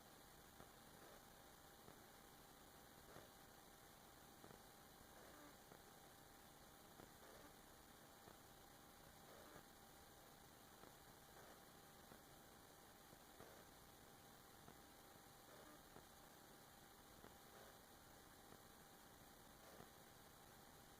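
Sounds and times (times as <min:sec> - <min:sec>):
faint hiss and hum: 0:00.0 - 0:20.9
faint ticks: 0:03.0 - 0:03.5, 0:04.4 - 0:09.7, 0:10.6 - 0:18.8, 0:19.5 - 0:20.2.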